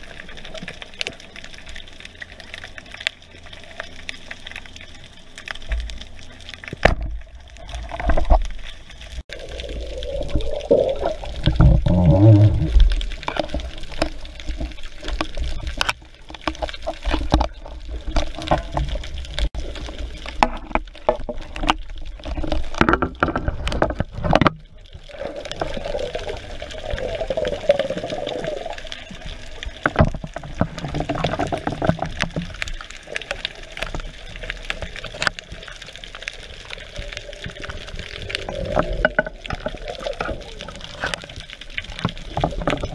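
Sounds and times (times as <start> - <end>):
water sloshing and gurgling: 0.0 - 42.9.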